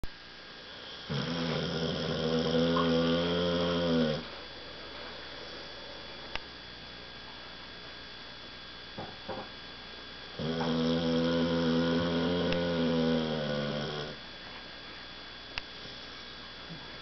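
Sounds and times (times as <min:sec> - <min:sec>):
dog snoring: 0:00.9 - 0:04.4, 0:10.4 - 0:14.2.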